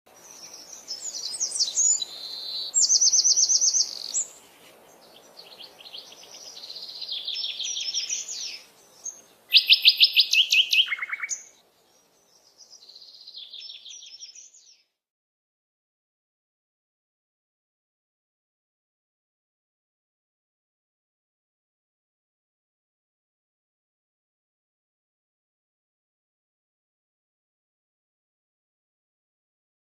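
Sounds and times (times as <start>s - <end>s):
songbird trilling: 0.2s - 14.8s.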